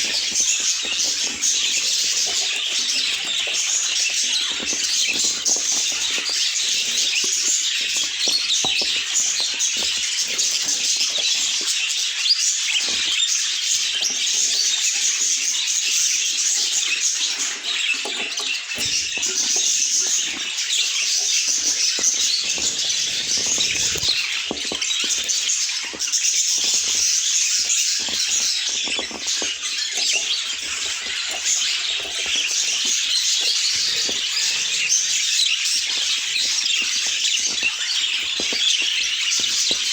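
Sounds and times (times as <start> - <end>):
budgerigars chattering and warbling: 0.0 - 39.9.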